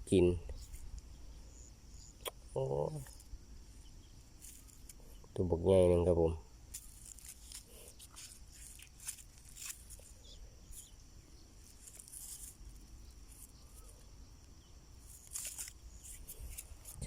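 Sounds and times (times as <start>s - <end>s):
insects trilling: 0.0s - 17.0s
faint clicks and rustles: 3.0s - 5.4s, 6.7s - 17.0s.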